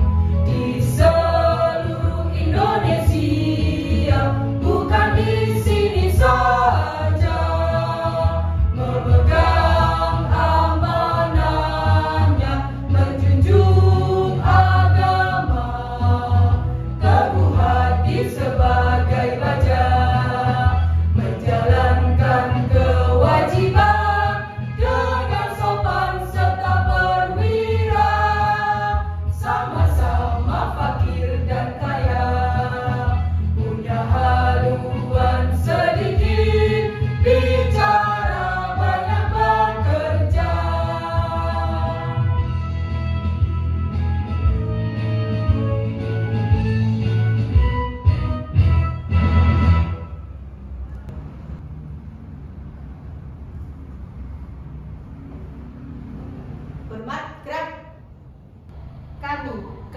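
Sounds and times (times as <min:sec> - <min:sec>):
children's choir singing: 0:00.0 - 0:42.5
backing track with steady bass: 0:00.0 - 0:50.2.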